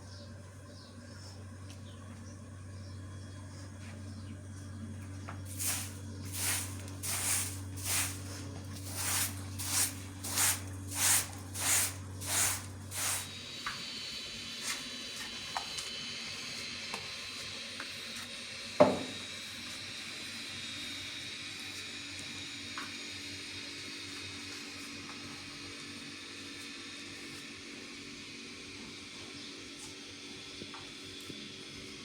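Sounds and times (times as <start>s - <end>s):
short hissing swishes: 9.0s - 13.3s.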